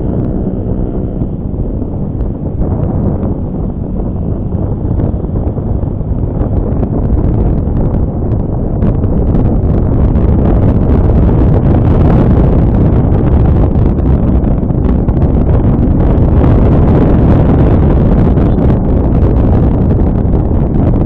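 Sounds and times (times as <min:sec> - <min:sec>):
road noise: 0:00.0 - 0:21.0
wind buffeting microphone: 0:00.0 - 0:21.0.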